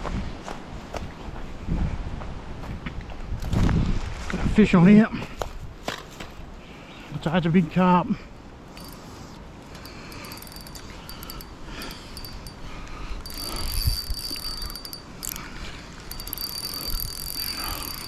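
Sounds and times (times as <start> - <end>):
fishing reel whirring and clicking: 8.7 - 18.0.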